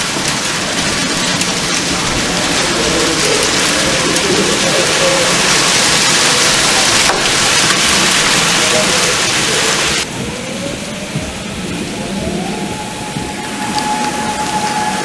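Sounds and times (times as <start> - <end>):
heavy rain hissing: 0.0 - 15.0.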